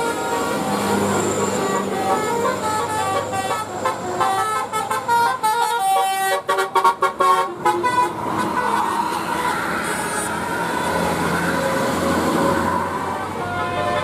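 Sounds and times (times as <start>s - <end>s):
multi-tone bus horn melody: 0.0s - 14.0s.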